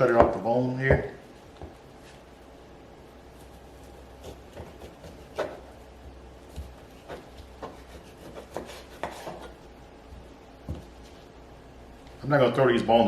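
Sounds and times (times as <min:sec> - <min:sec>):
knife on cutting board: 0:03.9 - 0:05.8, 0:06.6 - 0:09.6.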